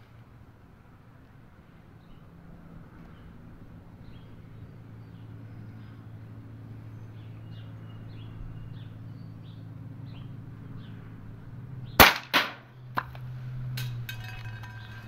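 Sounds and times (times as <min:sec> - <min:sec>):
small birds chirping: 0:01.8 - 0:12.0.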